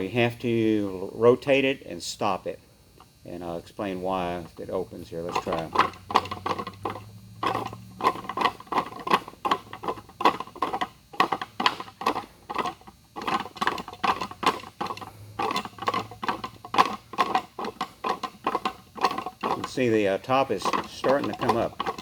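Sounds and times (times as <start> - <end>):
box knocking and clattering: 5.3 - 22.0.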